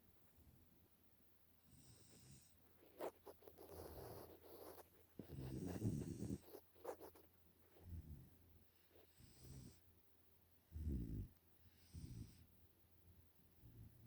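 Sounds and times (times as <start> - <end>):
soft breaths: 1.6 - 12.8
puppy snoring: 1.7 - 7.2, 9.0 - 9.8, 10.7 - 12.5.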